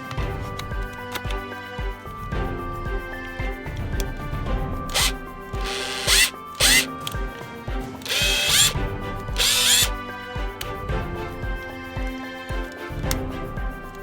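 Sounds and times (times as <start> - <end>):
background music: 0.0 - 14.0
hammer drill motor whining: 4.9 - 7.2, 8.0 - 10.0.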